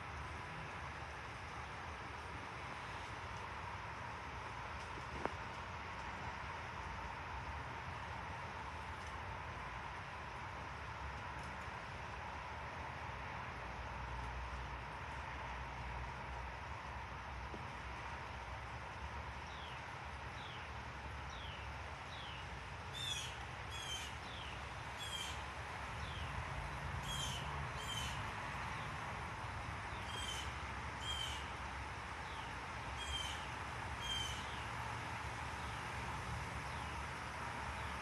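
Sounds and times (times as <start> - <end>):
wild birds calling: 23.0 - 25.5, 27.0 - 28.2, 30.0 - 31.6, 33.0 - 34.7.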